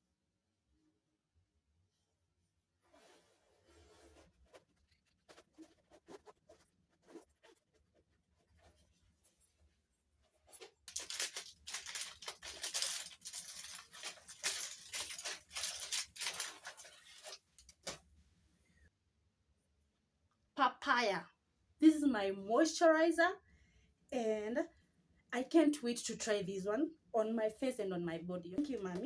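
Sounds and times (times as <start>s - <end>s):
plastic packaging rustling: 10.6s - 18.0s
packaging tearing: 10.9s - 18.0s.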